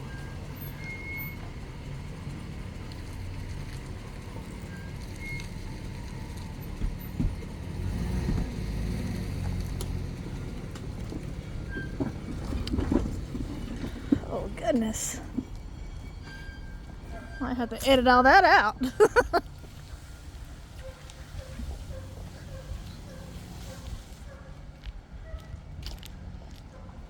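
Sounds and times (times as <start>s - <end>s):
vehicle knocks and jolts: 0.0s - 14.5s
vehicle engine and tyres rumbling: 0.0s - 27.0s.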